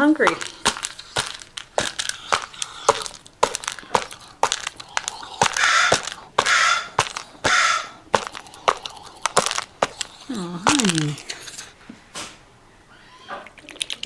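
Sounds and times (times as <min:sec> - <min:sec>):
scraping and rustling of food: 0:00.0 - 0:12.4
beak tapping on a bowl: 0:00.2 - 0:11.4.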